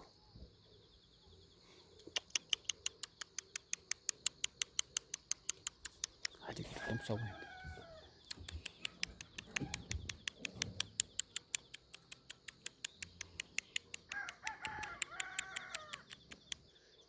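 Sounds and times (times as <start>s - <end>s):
chicken clucking: 8.3s - 16.5s.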